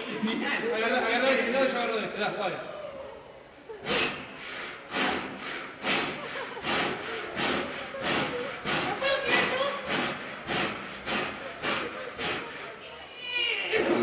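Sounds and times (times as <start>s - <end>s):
handsaw sawing wood: 3.9s - 12.8s.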